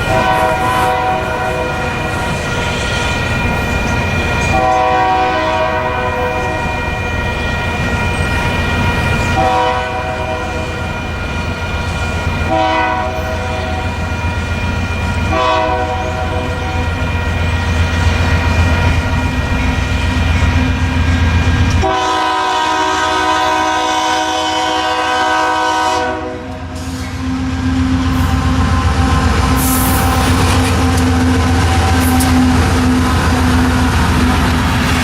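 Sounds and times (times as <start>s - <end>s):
locomotive horn chord: 0.0s - 2.3s, 4.5s - 6.9s, 9.3s - 10.7s, 12.5s - 14.0s, 15.3s - 16.9s, 21.8s - 34.4s
train wheel clatter: 0.0s - 22.0s, 26.4s - 35.0s
train rumble: 0.0s - 35.0s.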